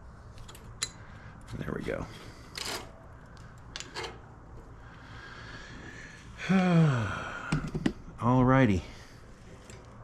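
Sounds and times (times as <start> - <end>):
man groaning: 6.4 - 7.5.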